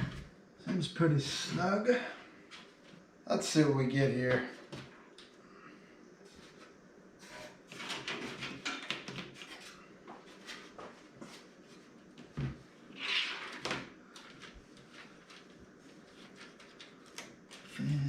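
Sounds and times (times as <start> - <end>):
loud rustle or scrape: 6.3 - 8.6.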